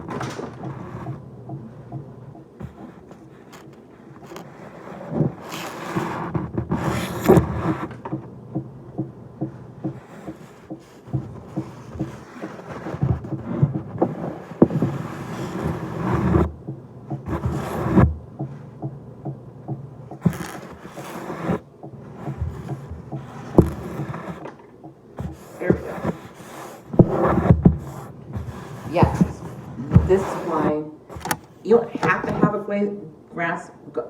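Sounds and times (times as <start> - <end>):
small clicks and knocks: 0.0 - 30.2, 31.1 - 32.6
napkin brushing and scraping glass: 2.6 - 8.1, 10.0 - 16.5, 17.1 - 18.1, 20.2 - 24.5, 25.2 - 32.6.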